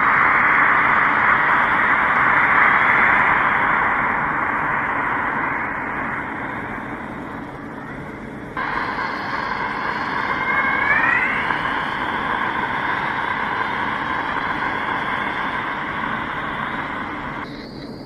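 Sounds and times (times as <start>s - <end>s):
spaceship rushing hiss: 0.0s - 17.5s
rising whistling tone: 7.3s - 18.0s.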